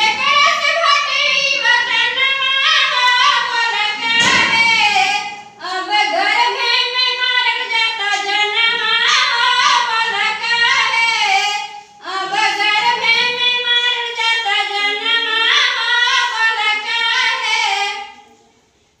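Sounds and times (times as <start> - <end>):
girl singing in a high voice: 0.0 - 18.2.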